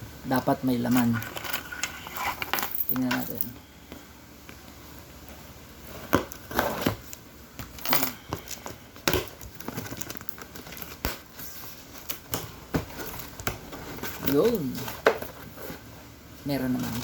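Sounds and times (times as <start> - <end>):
packaging crinkling and rustling: 8.4 - 15.9.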